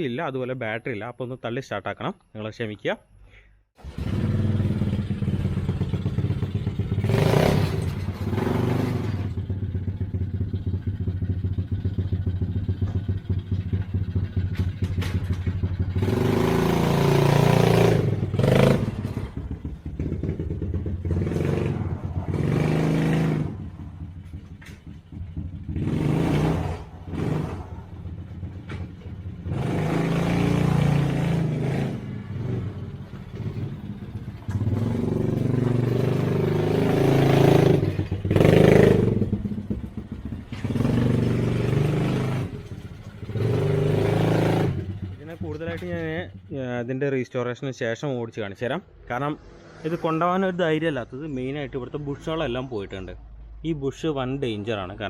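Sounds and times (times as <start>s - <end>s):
atv engine revving: 3.8s - 46.5s.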